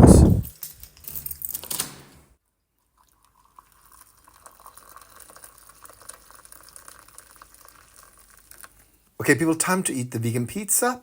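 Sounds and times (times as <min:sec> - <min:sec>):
faint hiss of water: 0:03.0 - 0:09.2.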